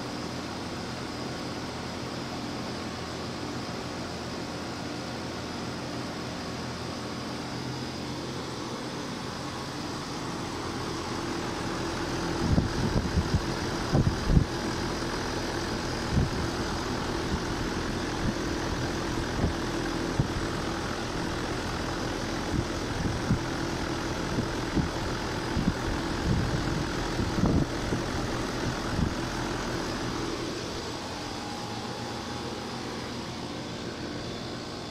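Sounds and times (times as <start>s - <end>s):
air conditioner hum: 0.0s - 34.9s.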